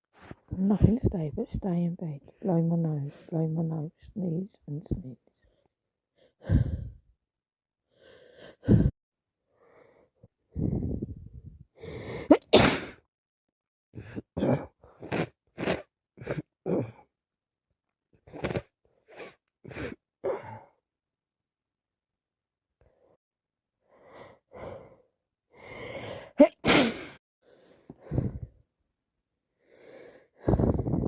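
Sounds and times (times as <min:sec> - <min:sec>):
woman sneezing: 0:12.3 - 0:13.0, 0:26.4 - 0:27.2.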